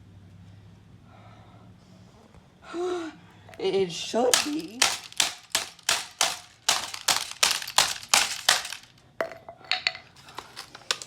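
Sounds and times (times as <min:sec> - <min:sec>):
hammer smashing laptop: 0:04.3 - 0:08.9.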